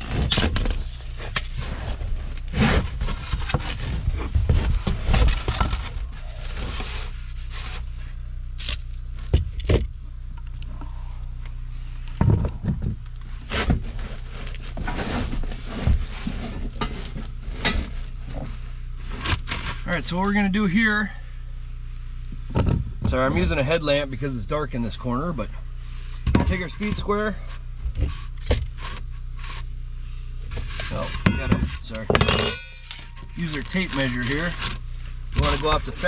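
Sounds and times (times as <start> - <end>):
tools and foam board handled: 0.0 - 7.9, 13.5 - 19.9, 26.2 - 29.6, 30.5 - 36.0
steady low hum: 0.0 - 36.0.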